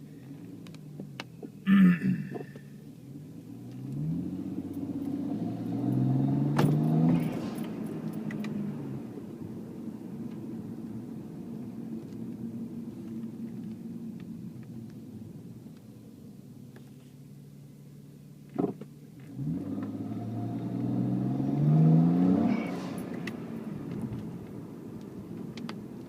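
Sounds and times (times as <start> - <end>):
car engine revving and idling: 0.0 - 26.0.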